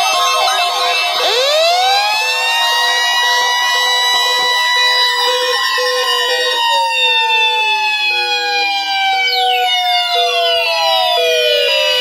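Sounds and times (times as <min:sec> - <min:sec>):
pulsing low beep: 0:00.0 - 0:02.1
steady high alert tones: 0:00.0 - 0:08.8
tones sliding down in pitch: 0:00.0 - 0:12.0.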